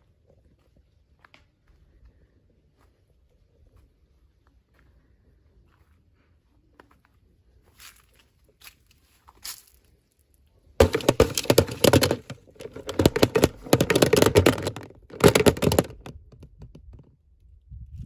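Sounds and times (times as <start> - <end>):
plastic packaging crinkling: 10.8 - 16.1.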